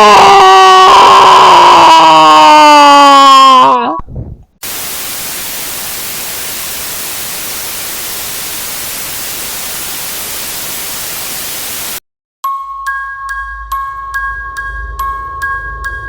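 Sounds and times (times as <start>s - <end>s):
television static hiss: 4.6s - 12.0s
chiming bell-like music: 12.5s - 16.0s.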